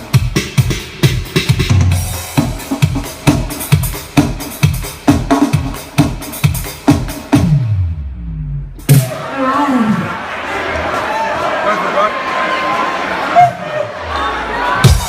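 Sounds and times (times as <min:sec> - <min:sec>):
live band music: 0:00.0 - 0:09.3.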